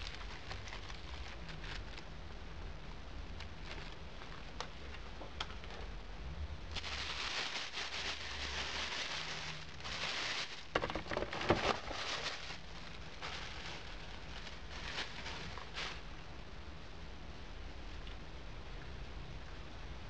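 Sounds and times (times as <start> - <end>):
packaging rustling and crackling: 0.0 - 2.1, 3.4 - 5.8, 6.7 - 16.1.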